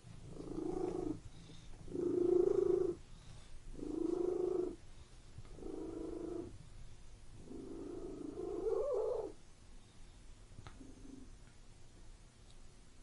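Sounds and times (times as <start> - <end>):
cat purring: 0.0 - 6.7, 7.4 - 9.4, 10.7 - 11.3.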